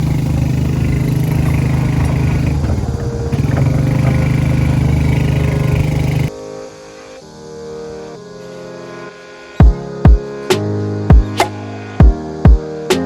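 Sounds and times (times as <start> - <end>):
engine low drone: 0.0 - 6.3
music: 5.3 - 13.0.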